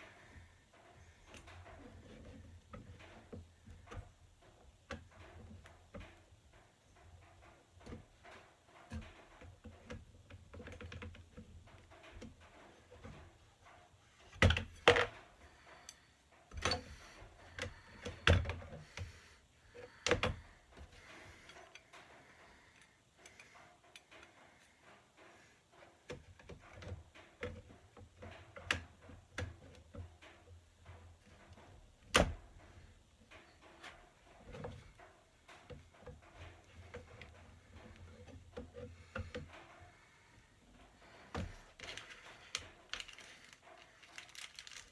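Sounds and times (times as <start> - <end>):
parts and tools clicking and knocking: 0.0 - 44.9.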